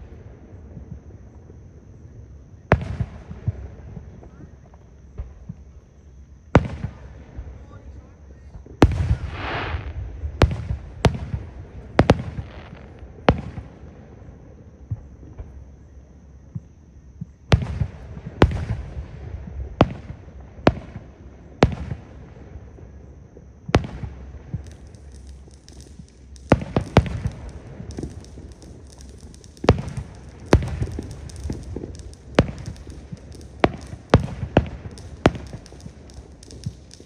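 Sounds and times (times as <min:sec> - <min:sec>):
fireworks bangs: 0:02.7 - 0:05.8, 0:06.6 - 0:14.0, 0:16.6 - 0:23.0, 0:23.6 - 0:37.0
fireworks crackling: 0:06.6 - 0:14.2, 0:17.2 - 0:37.0.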